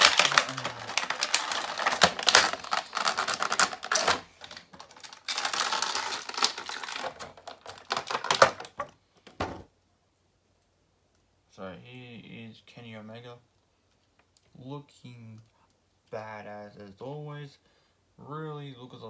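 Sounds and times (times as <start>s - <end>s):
plastic packaging crackling: 0.0s - 9.6s.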